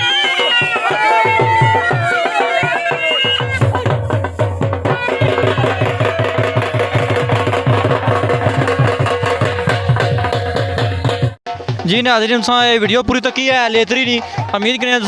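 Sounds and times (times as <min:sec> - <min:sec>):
reed wind instrument playing: 0:00.0 - 0:09.2
drum beaten in fast rhythm: 0:00.0 - 0:15.0.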